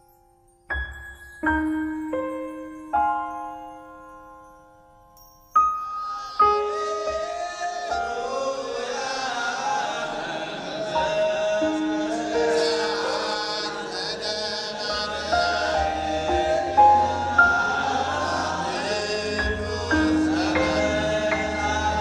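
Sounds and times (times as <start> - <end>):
choral chant singing: 6.2 - 22.0.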